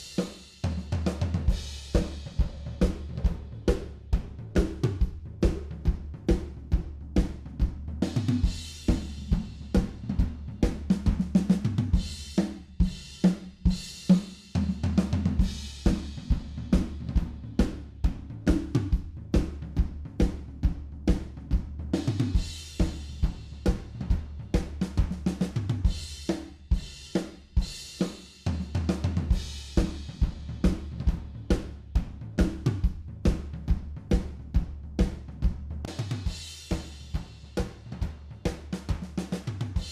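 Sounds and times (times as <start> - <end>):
drum kit playing fast groove: 0.0 - 39.9.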